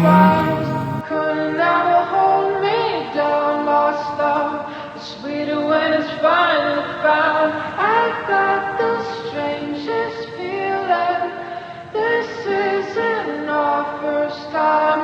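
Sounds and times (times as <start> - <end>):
woman singing long wavering notes: 0.0 - 1.0.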